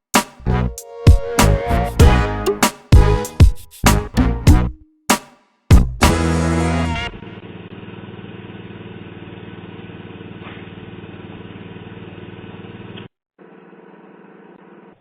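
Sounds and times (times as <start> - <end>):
song: 0.4 - 5.0, 6.0 - 7.2.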